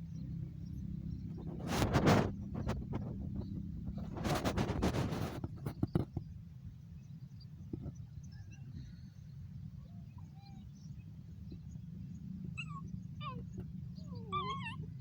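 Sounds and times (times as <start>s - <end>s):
animal high-pitched wavering cries: 10.1s - 10.8s, 12.5s - 15.0s.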